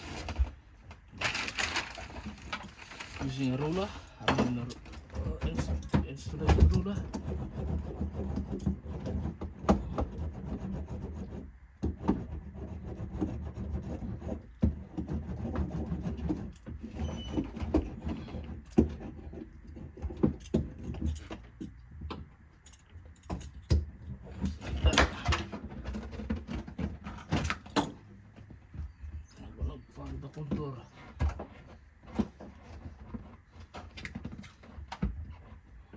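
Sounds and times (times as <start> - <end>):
sound-deadening mat crinkling: 0.0 - 4.6.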